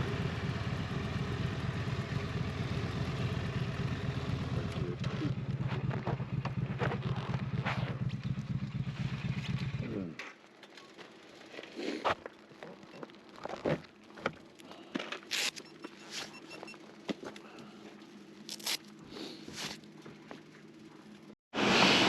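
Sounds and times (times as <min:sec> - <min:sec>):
motorcycle engine idling: 0:00.0 - 0:10.1.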